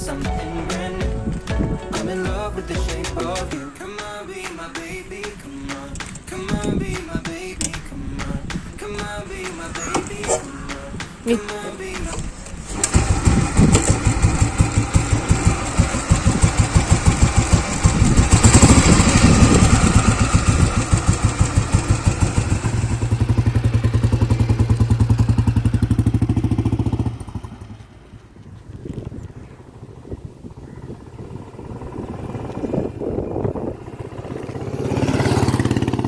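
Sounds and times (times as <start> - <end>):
motorcycle engine running: 12.0 - 36.0.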